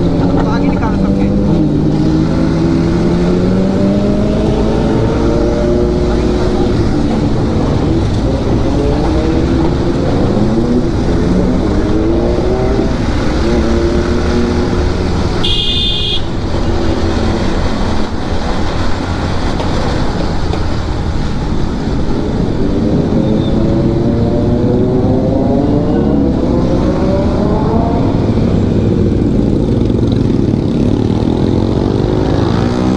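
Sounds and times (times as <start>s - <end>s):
wind and road rush: 0.0s - 32.9s
motorcycle engine running: 12.9s - 19.5s
horn sounding: 15.2s - 16.8s.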